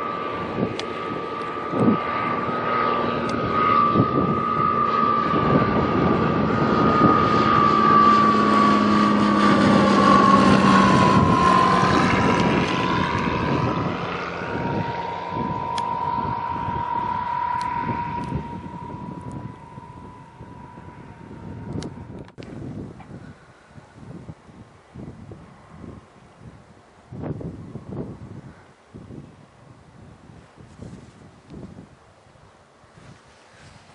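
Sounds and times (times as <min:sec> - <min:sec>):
propeller aircraft flying past: 0:00.0 - 0:24.0, 0:24.8 - 0:26.6.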